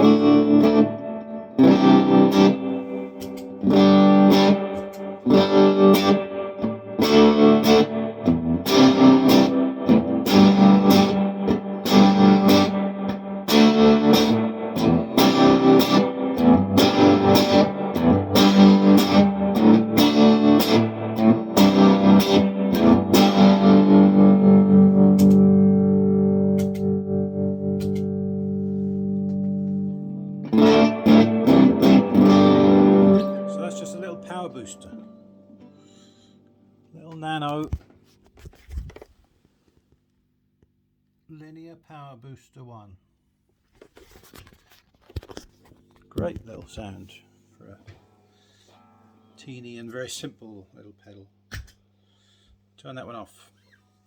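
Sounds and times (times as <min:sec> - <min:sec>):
electric guitar chords: 0:00.0 - 0:37.4.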